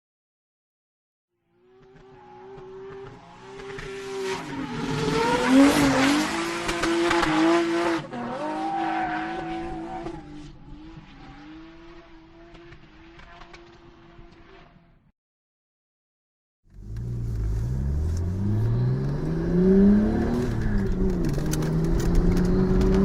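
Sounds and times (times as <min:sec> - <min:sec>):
race car engine: 0:01.5 - 0:14.8, 0:16.7 - 0:23.0
tyres squealing and skidding: 0:08.1 - 0:10.6.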